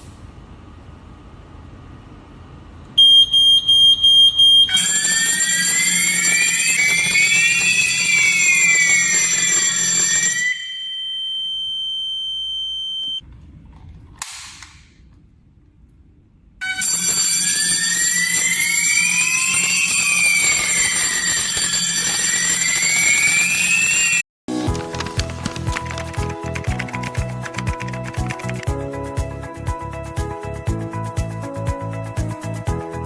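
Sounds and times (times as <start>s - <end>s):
alarm siren sweeping: 3.0s - 13.2s, 16.6s - 24.2s
steady beep: 3.0s - 13.2s.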